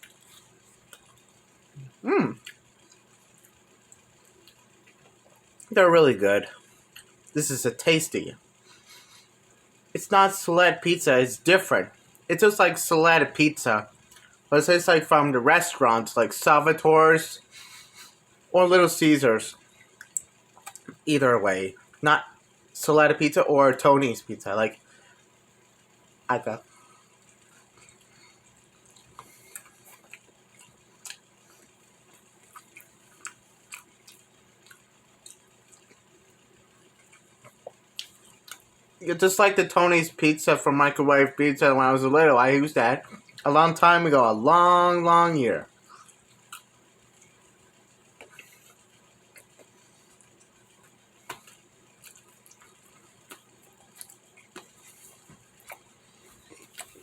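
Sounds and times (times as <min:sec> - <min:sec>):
person chewing pizza: 0:00.0 - 0:05.7, 0:06.7 - 0:07.3, 0:19.5 - 0:21.0, 0:26.7 - 0:38.8, 0:43.0 - 0:43.4, 0:45.8 - 0:57.0.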